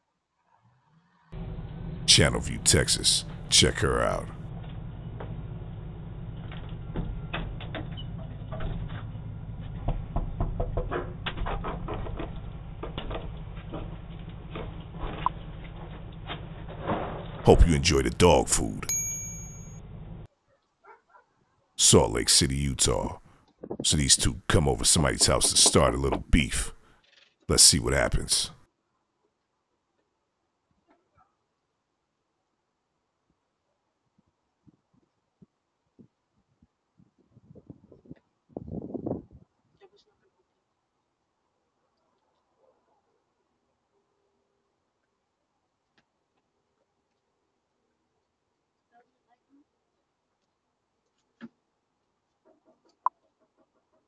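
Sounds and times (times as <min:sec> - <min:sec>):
low microphone hum: 0:02.1 - 0:04.4.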